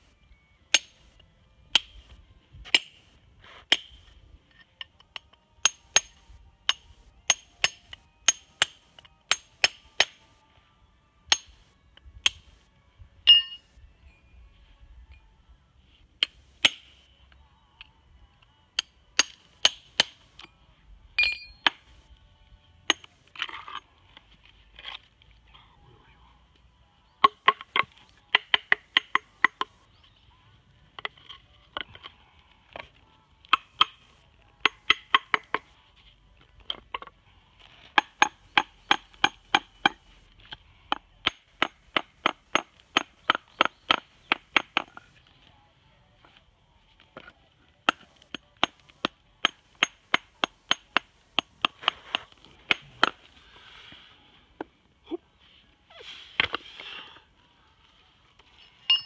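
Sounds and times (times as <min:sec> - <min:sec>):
hammer tapping on stone: 0:05.2 - 0:10.2, 0:22.9 - 0:23.1, 0:27.2 - 0:29.7, 0:34.6 - 0:35.7, 0:38.0 - 0:40.0, 0:40.9 - 0:45.0, 0:47.8 - 0:53.2.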